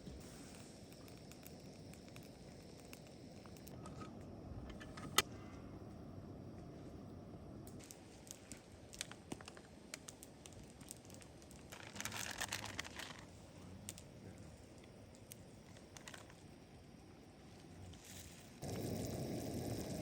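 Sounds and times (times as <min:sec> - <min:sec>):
small objects clicking and tapping: 0:07.7 - 0:12.9
crinkling rustle: 0:07.8 - 0:14.5, 0:15.3 - 0:16.4.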